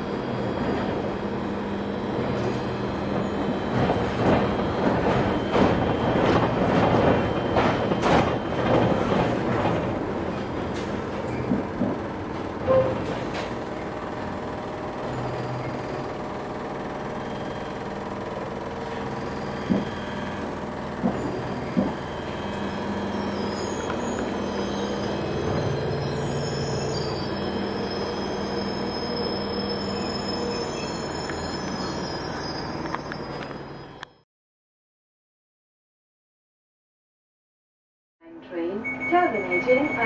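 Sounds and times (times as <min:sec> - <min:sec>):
train wheels rumbling on rail: 0:00.0 - 0:17.2, 0:17.8 - 0:33.8
train clunks: 0:02.3 - 0:14.2, 0:18.8 - 0:26.2.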